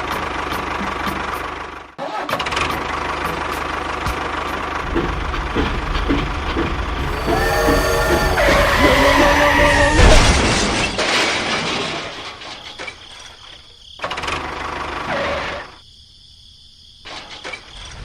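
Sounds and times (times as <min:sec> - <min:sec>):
small engine running: 0:04.8 - 0:11.0
heavy low rumble: 0:04.8 - 0:11.1.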